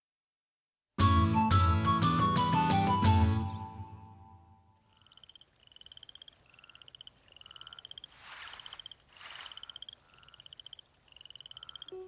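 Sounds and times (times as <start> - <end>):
frog trilling: 4.8 - 12.0.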